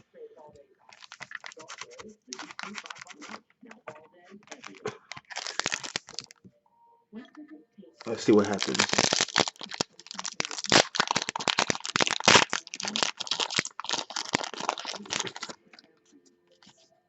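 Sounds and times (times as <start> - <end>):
card pack wrapper crinkling: 0.8 - 6.4, 8.0 - 15.9, 16.5 - 16.8.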